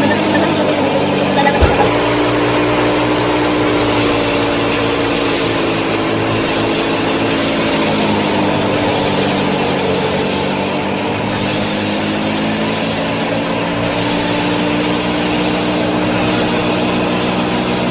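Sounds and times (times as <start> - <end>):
brief knocks: 1.4 - 2.2.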